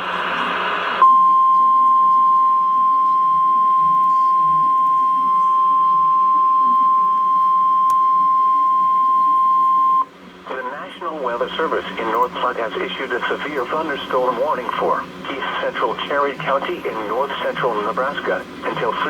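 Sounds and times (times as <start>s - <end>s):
steady alarm tone: 1.0s - 10.0s.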